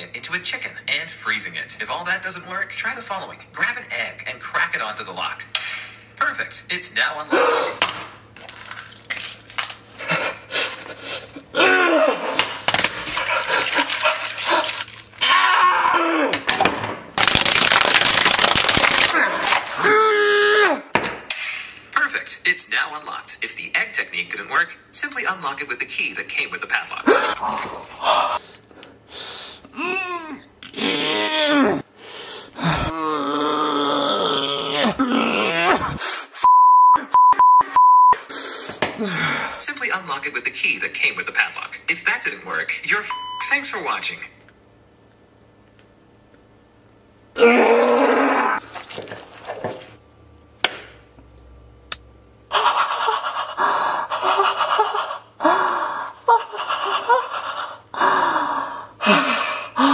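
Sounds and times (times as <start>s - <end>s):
person groaning: 7.3s - 7.8s, 11.5s - 12.4s, 14.5s - 16.4s, 27.1s - 28.4s, 29.7s - 31.9s, 32.6s - 36.0s, 47.4s - 48.6s, 58.0s - 59.9s
breathy gasping vocal sounds: 27.1s - 36.3s, 52.5s - 59.9s
person gasping: 31.7s - 33.2s, 38.3s - 39.6s, 52.5s - 59.9s.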